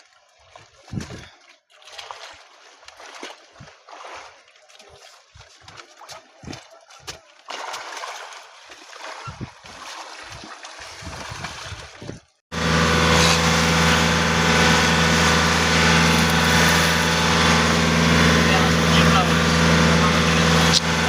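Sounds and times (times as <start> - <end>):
water slapping against boat hull: 0.0 - 12.4
boat engine running: 10.8 - 21.0.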